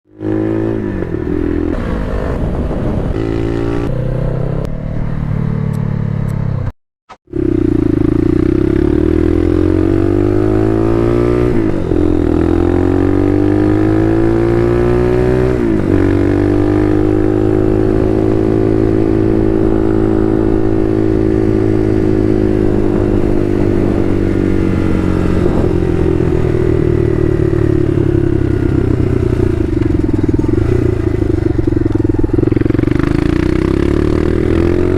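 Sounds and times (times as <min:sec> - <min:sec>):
motorcycle engine accelerating: 0:00.1 - 0:34.9.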